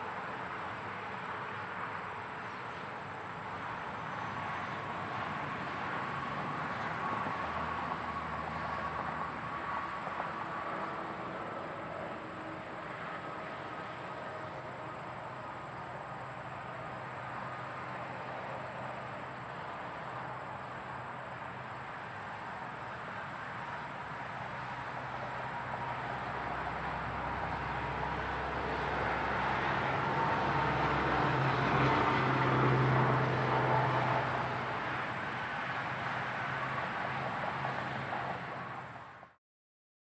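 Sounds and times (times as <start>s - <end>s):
highway traffic rushing: 0.0s - 39.4s
vehicle passing close: 26.1s - 38.2s.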